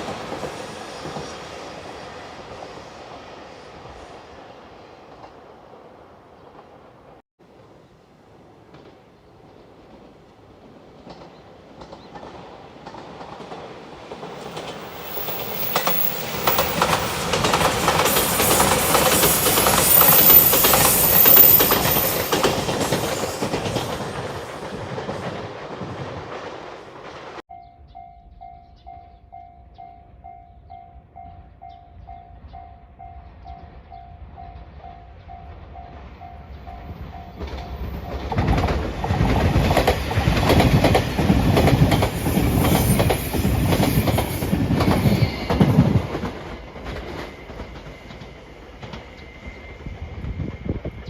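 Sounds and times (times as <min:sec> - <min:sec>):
train wheels clattering over rails: 0:10.9 - 0:27.4, 0:36.5 - 0:51.0.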